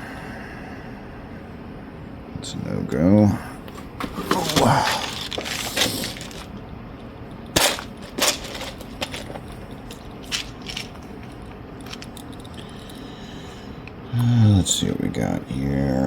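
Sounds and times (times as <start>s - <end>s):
small tools clicking and tapping: 7.6s - 13.0s.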